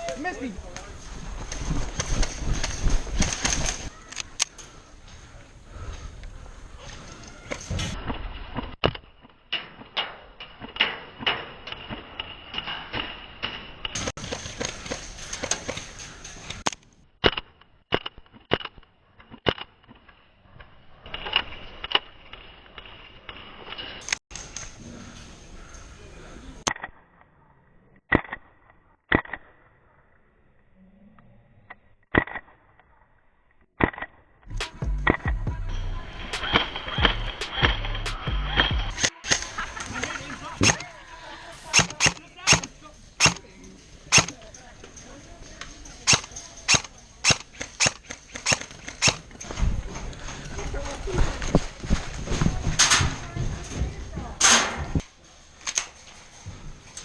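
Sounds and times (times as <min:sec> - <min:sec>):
airsoft gun shots: 0:41.6 - 0:43.4, 0:44.1 - 0:44.4.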